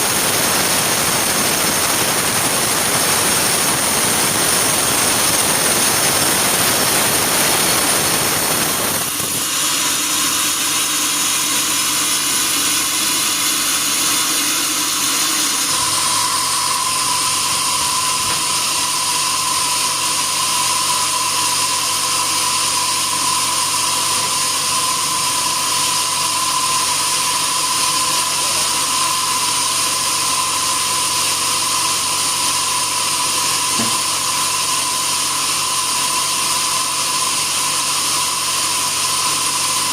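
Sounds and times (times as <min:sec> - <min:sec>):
steady high whine: 0:00.0 - 0:30.8
sawmill machinery running: 0:00.0 - 0:39.9.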